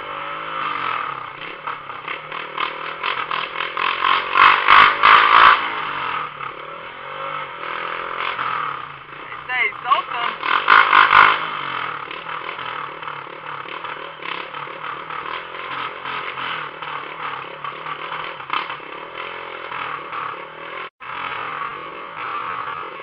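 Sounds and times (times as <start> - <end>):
motorcycle engine running: 0.0 - 23.0.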